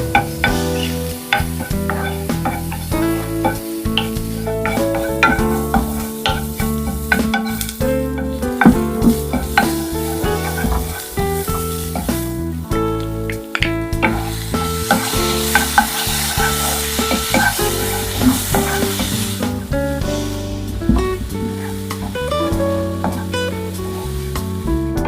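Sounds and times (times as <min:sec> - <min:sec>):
background music: 0:00.0 - 0:25.0
food sizzling in oil: 0:00.0 - 0:25.0
utensil clicking against pan: 0:00.2 - 0:12.2.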